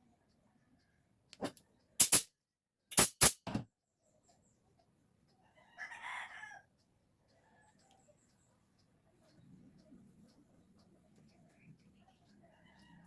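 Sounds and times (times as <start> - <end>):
rooster crowing: 5.5 - 6.7, 12.4 - 13.0.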